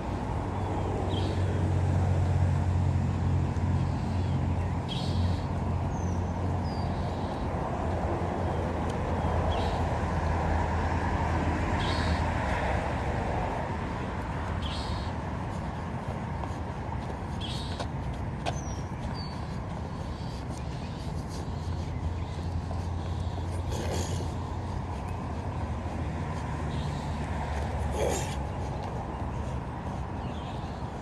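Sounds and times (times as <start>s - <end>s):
street traffic: 0.0s - 31.0s
vehicle engine humming: 0.0s - 31.0s
small birds chirping: 0.5s - 1.6s, 3.8s - 10.0s, 11.8s - 12.3s, 14.2s - 31.0s.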